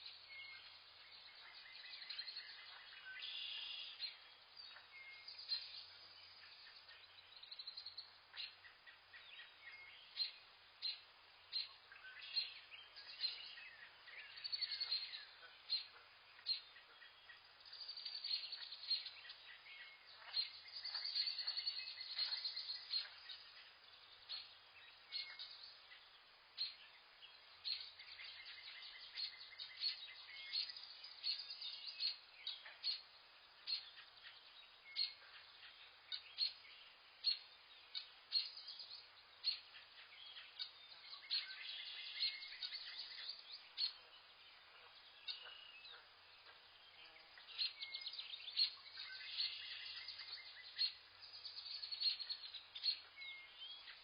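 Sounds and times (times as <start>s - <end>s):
birds chirping and trilling: 0.0s - 54.0s
faint background hiss: 0.0s - 54.0s.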